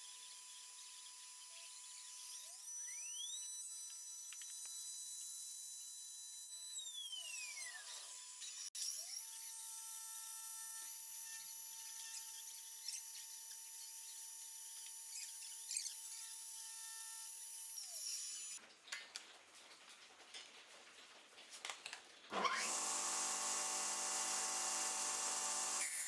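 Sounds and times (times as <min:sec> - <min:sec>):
router spindle motor whine: 0:22.3 - 0:26.0.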